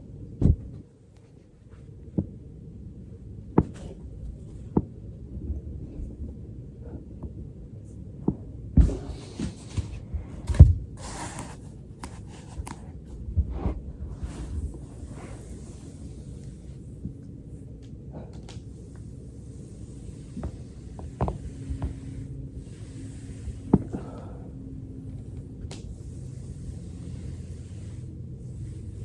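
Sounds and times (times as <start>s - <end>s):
foam roller rumbling on floor: 8.2s - 17.2s, 18.7s - 29.0s.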